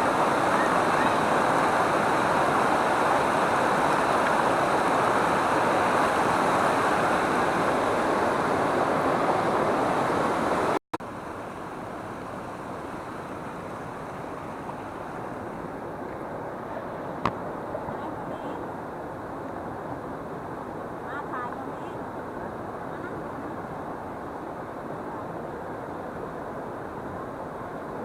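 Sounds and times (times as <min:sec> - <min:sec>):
waterfall rushing: 0:00.0 - 0:19.4.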